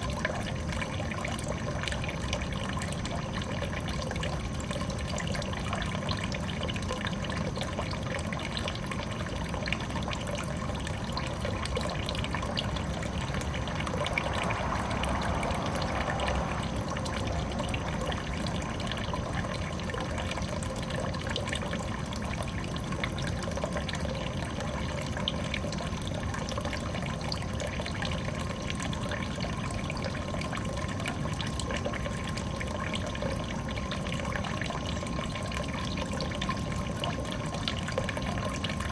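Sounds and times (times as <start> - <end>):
water splashing in pond: 10.0 - 21.7.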